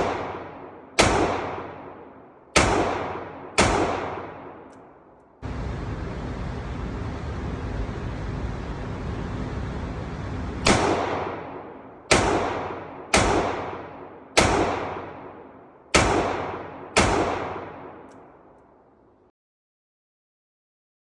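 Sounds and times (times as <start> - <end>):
revolver gunshots with echo: 0.0 - 5.2, 10.6 - 18.5.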